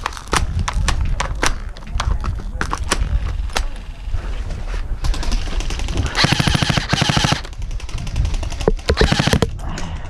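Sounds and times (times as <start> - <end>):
airsoft rifle full auto fire: 6.2 - 7.5, 8.9 - 9.5.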